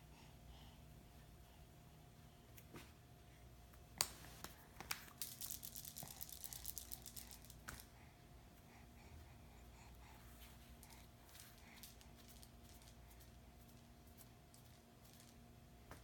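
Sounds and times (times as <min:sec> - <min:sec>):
low steady hum: 0:00.0 - 0:16.0
rattle of small clicks: 0:05.1 - 0:07.9, 0:10.8 - 0:15.4.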